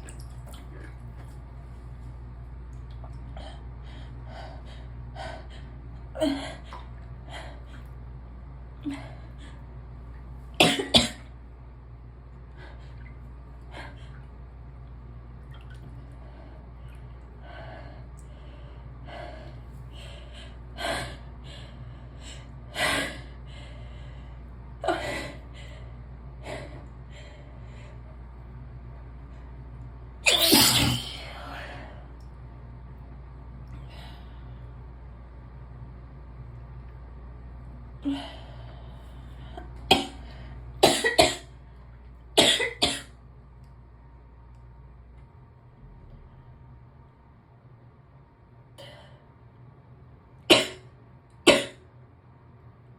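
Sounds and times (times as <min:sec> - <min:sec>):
person sneezing: 0:30.3 - 0:31.3.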